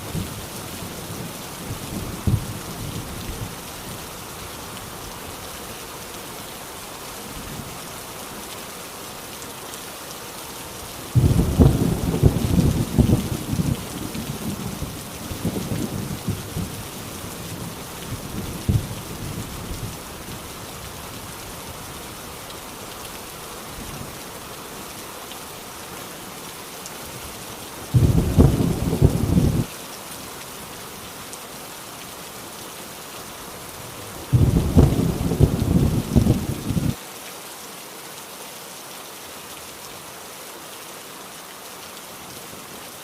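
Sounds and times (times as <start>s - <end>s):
heavy rain falling: 0.0s - 43.0s
loud thunder crack: 11.2s - 13.7s, 28.0s - 29.7s, 34.3s - 37.0s
thunder rumbling: 11.2s - 16.8s, 28.0s - 29.7s, 34.3s - 37.0s.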